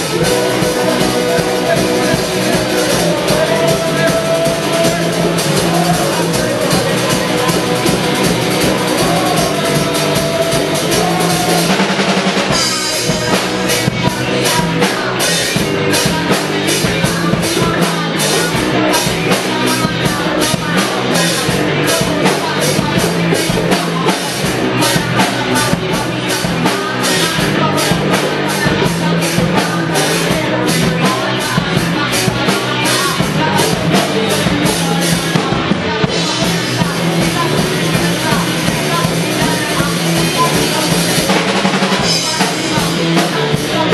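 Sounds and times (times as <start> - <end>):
drum kit hits: 0.0 - 22.2
rock band playing: 0.0 - 43.9.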